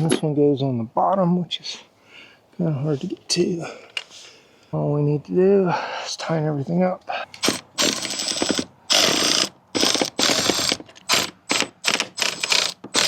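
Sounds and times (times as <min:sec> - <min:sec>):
ratcheting tool clicking: 0:07.4 - 0:13.0.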